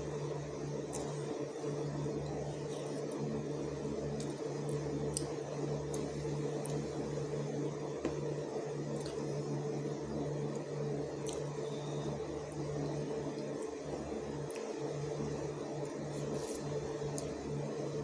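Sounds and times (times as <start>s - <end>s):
appliance humming: 0.0s - 18.0s.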